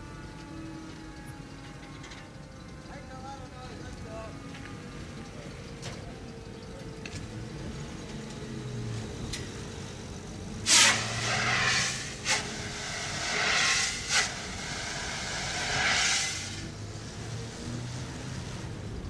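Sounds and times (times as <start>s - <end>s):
fire engine idling: 0.1s - 19.0s
air hissing: 10.6s - 17.7s.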